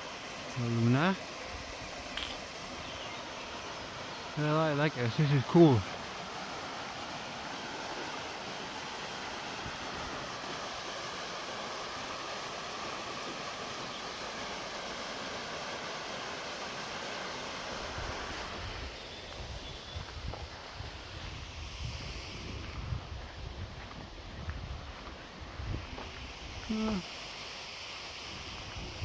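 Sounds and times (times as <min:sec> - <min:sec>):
waterfall rushing: 0:02.1 - 0:18.7
wind buffeting microphone: 0:19.4 - 0:26.6.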